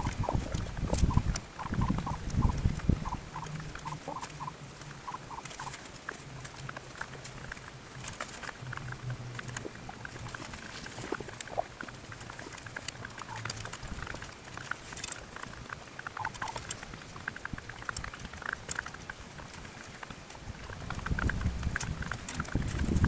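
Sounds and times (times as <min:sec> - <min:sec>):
chickens clucking softly: 0:00.0 - 0:05.8, 0:10.0 - 0:19.0
rustling: 0:00.0 - 0:23.0.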